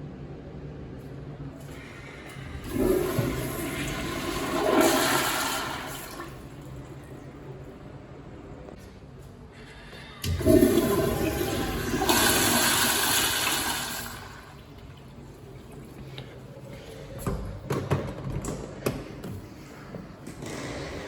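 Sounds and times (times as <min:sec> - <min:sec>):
toilet flushing water rush: 0:01.7 - 0:07.0, 0:10.2 - 0:16.2.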